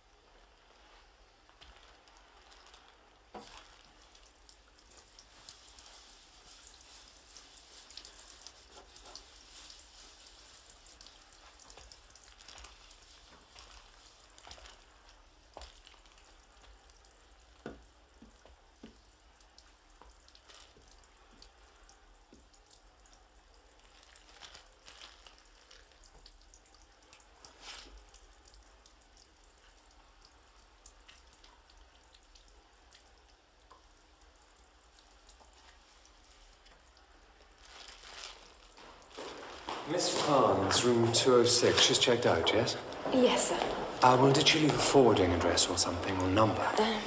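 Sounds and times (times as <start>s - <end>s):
faint hiss: 35.2s - 47.0s.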